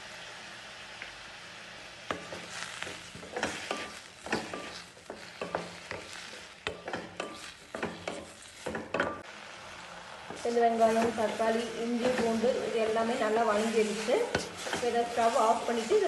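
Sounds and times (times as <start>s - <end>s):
vegetables sizzling in hot oil: 0.0s - 16.0s
utensil scraping a pan: 2.1s - 9.2s, 10.3s - 16.0s.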